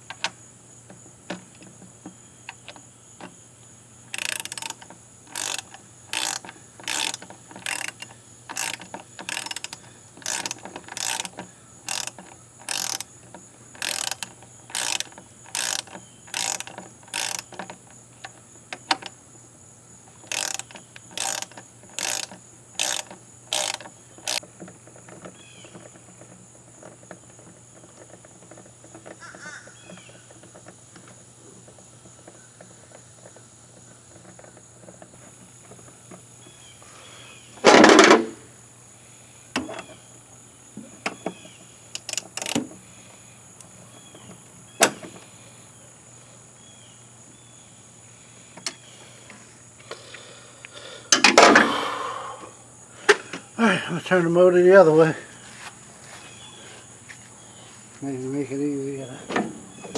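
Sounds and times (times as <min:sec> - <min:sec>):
socket ratchet clicking: 0:04.1 - 0:13.2, 0:13.8 - 0:17.7, 0:20.2 - 0:24.4, 0:41.9 - 0:42.6.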